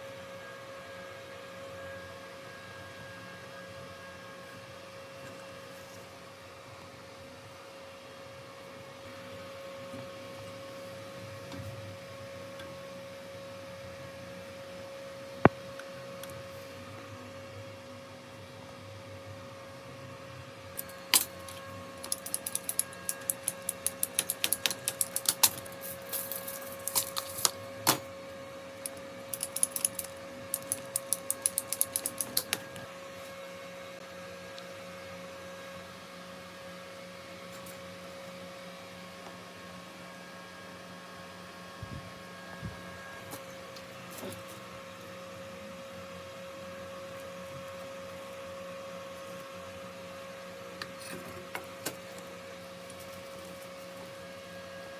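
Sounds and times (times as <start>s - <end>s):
steady hum: 0.0s - 54.9s.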